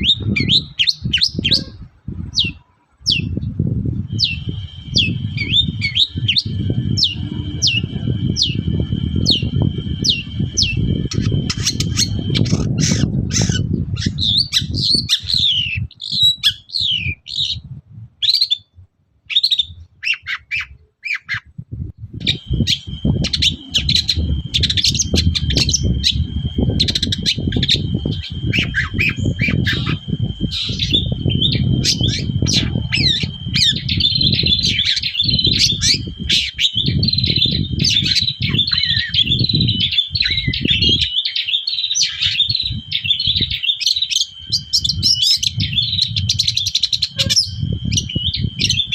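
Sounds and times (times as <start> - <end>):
low rumble: 3.3 - 14.9, 21.6 - 36.4
long steady high tone: 3.9 - 12.7, 22.2 - 48.9.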